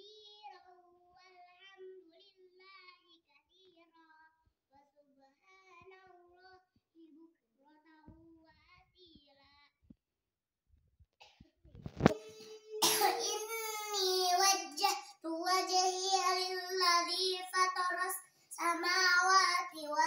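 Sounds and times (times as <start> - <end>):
child singing faintly: 12.1 - 20.0.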